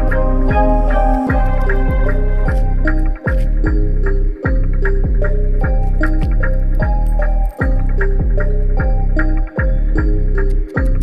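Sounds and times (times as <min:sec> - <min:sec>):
background music with steady beat: 0:00.0 - 0:11.0.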